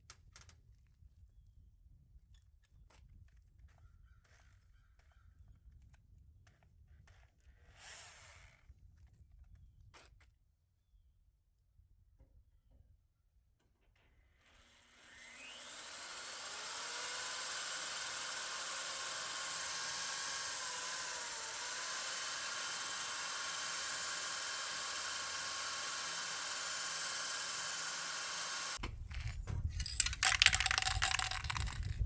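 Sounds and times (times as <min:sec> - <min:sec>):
electric drill boring into steel: 0:14.3 - 0:32.0
knocking and handling noise: 0:28.8 - 0:32.0.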